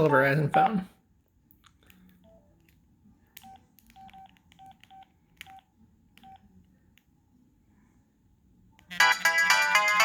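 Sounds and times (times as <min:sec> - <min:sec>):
phone keypad beeps: 0:03.4 - 0:06.4.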